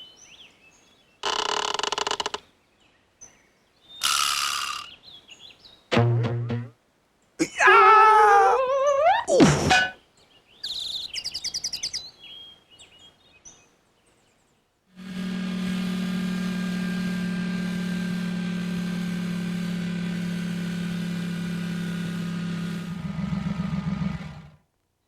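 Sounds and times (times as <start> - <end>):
high chirping clicks: 4.0 - 4.9
small vehicle motor droning: 14.9 - 24.6.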